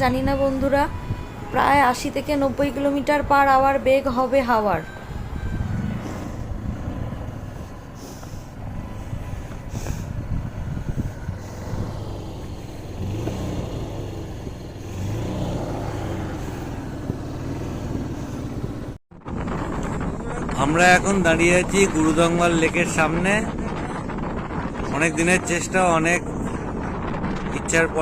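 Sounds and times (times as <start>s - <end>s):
wind buffeting microphone: 0.0s - 28.0s
engine running: 4.8s - 22.8s.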